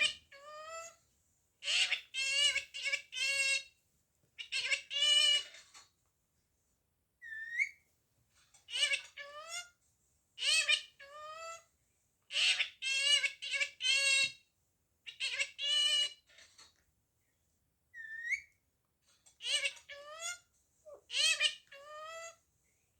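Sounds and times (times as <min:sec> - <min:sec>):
parrot babbling speech: 0:00.0 - 0:01.0, 0:01.6 - 0:03.7, 0:04.4 - 0:05.5, 0:08.7 - 0:09.7, 0:10.4 - 0:11.7, 0:12.3 - 0:14.4, 0:15.1 - 0:16.3, 0:19.4 - 0:22.4.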